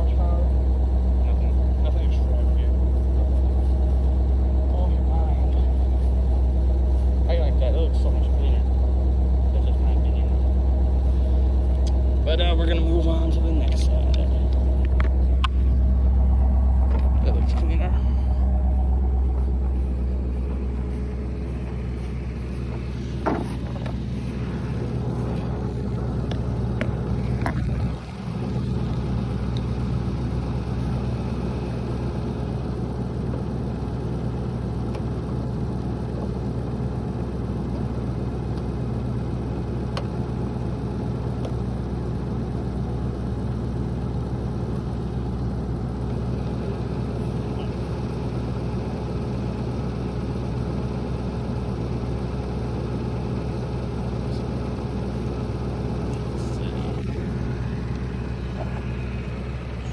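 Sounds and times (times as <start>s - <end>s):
vehicle engine idling: 0.0s - 59.9s.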